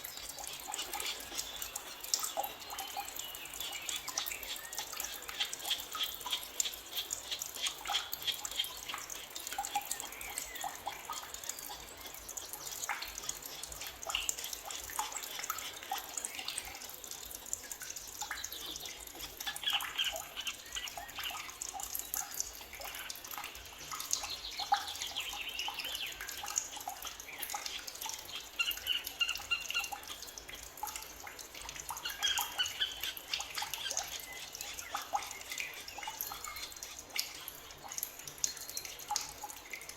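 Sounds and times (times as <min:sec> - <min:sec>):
forest birds chirping and singing: 0:00.0 - 0:11.0, 0:32.0 - 0:37.0.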